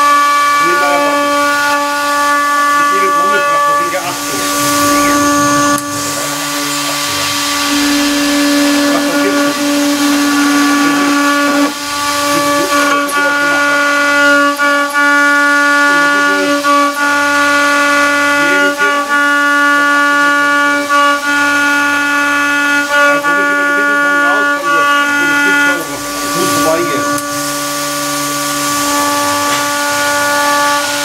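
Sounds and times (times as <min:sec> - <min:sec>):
milling spindle high whine: 0:00.0 - 0:31.0
coolant mist hiss: 0:02.1 - 0:18.9, 0:25.7 - 0:31.0.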